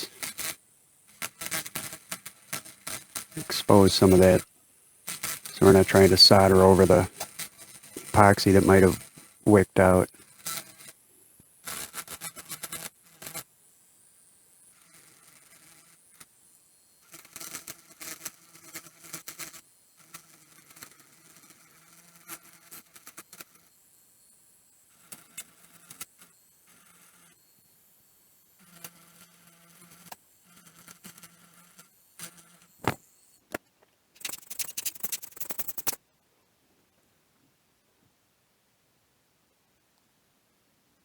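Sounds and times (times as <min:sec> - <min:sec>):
rapid crackling: 0:03.4 - 0:04.4, 0:34.2 - 0:36.0
sharp click: 0:32.8 - 0:36.0
hand tools scraping and clicking: 0:34.2 - 0:36.0.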